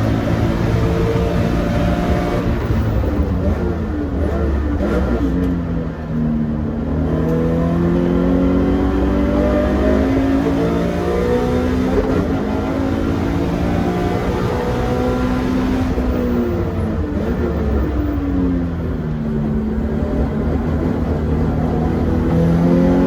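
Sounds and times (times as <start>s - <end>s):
car engine accelerating: 0.0s - 23.0s.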